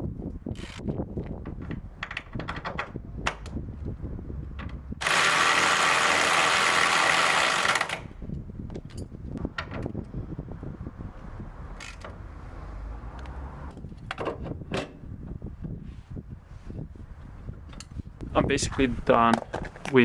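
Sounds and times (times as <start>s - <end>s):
power tool running: 5.0s - 8.1s.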